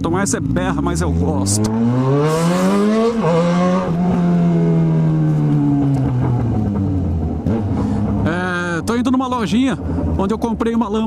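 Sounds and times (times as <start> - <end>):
motorcycle engine accelerating hard: 0.0 - 10.7.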